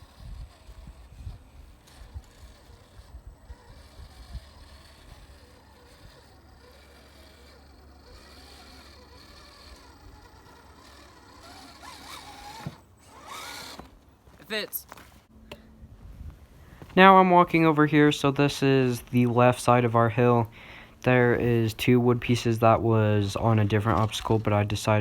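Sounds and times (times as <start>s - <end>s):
toy car electric motor whining: 0.0s - 14.0s
wind on microphone: 15.8s - 16.8s.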